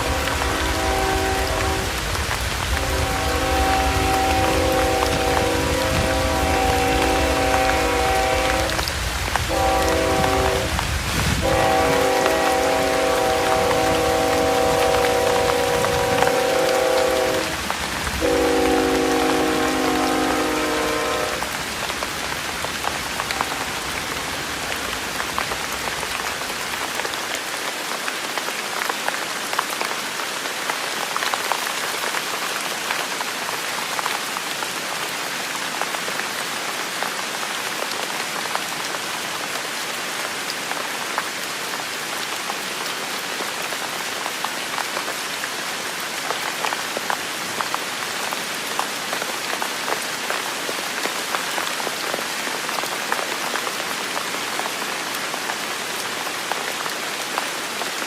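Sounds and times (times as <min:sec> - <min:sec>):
distant train horn: 0:00.0 - 0:10.8, 0:11.4 - 0:21.6
rain drops on hard surface: 0:00.0 - 0:58.0.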